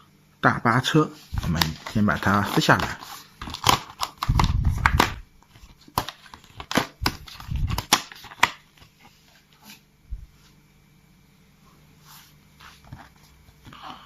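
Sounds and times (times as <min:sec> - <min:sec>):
paper tearing and crackling: 0:01.3 - 0:08.6.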